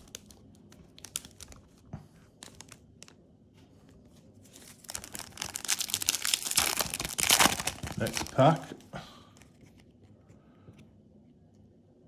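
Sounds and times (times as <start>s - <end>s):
foil wrapper crinkling: 0.0s - 3.2s, 4.5s - 8.8s.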